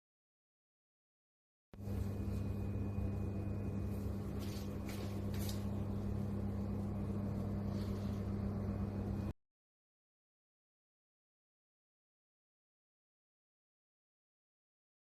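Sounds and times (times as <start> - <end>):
washing machine motor hum: 1.8 - 9.3.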